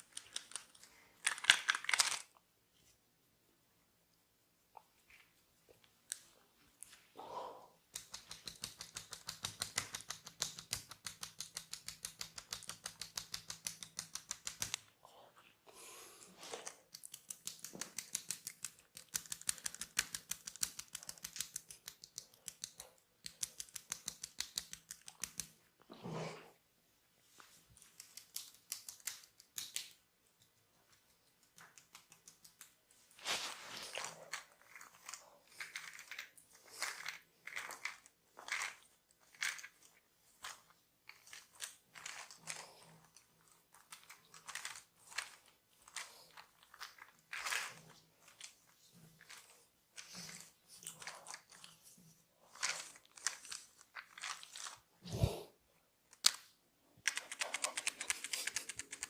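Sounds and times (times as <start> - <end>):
crisp clicks of hands massaging: 0.0 - 2.9, 7.8 - 15.5, 16.4 - 25.9, 27.2 - 55.4, 56.0 - 59.0
hands rubbing hair: 30.8 - 36.1.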